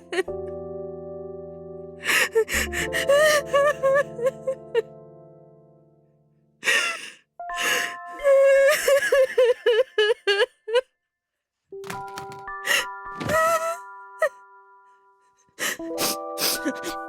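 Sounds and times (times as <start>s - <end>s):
woman wailing and sobbing: 2.1s - 4.9s, 7.6s - 10.9s, 12.7s - 14.4s
woman gasping: 6.6s - 8.1s.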